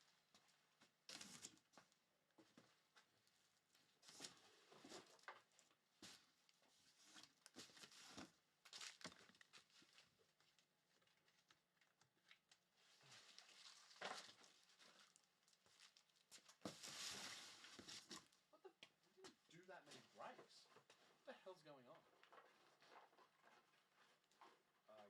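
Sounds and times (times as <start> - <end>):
trading cards and foil wrappers crinkling: 7.2 - 12.0.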